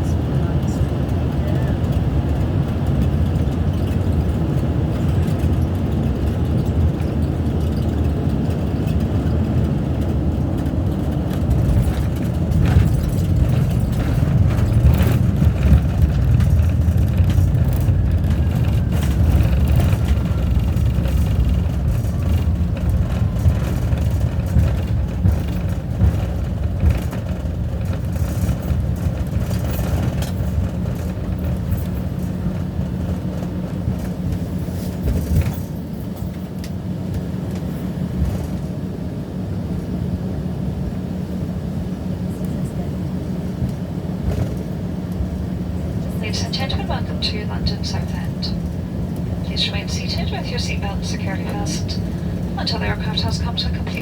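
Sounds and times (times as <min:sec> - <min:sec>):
airliner engines rumbling: 0:00.0 - 0:54.0
knocks and rattles: 0:01.8 - 0:34.3.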